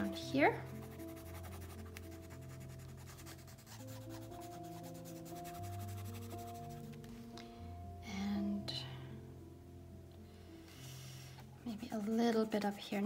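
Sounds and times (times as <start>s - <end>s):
soft background music: 0.0s - 13.0s
colouring stick rubbing on paper: 0.2s - 7.0s, 11.7s - 13.0s.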